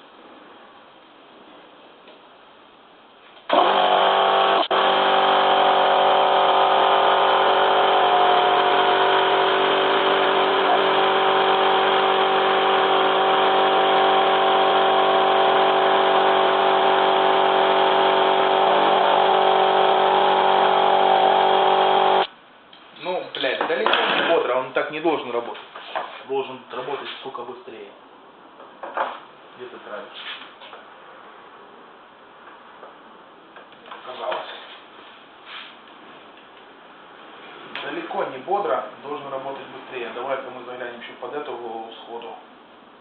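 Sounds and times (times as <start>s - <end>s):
air compressor running: 3.5s - 22.3s.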